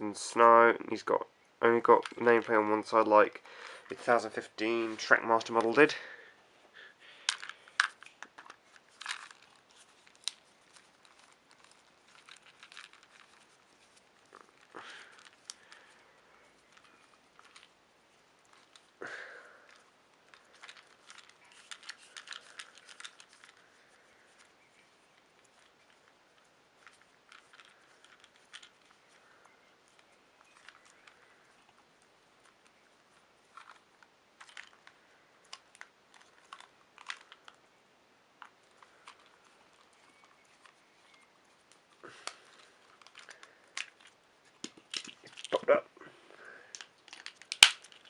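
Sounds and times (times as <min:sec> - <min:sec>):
clicks of plastic toy handled: 0:34.4 - 0:37.6, 0:42.1 - 0:45.6, 0:46.7 - 0:48.0.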